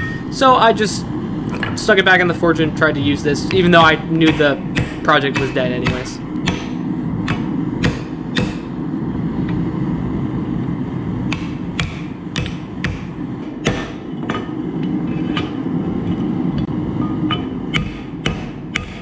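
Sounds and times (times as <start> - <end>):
hammer striking hot steel: 0.0 - 6.6.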